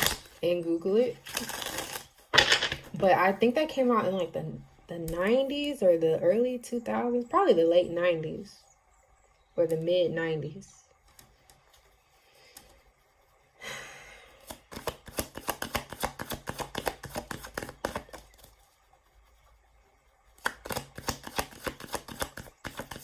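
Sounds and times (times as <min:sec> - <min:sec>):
cards swishing: 0:14.3 - 0:18.7, 0:20.4 - 0:23.0.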